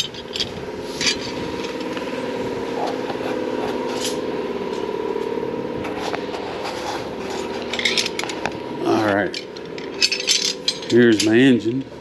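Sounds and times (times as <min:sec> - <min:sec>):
motor humming: 0:00.0 - 0:12.0.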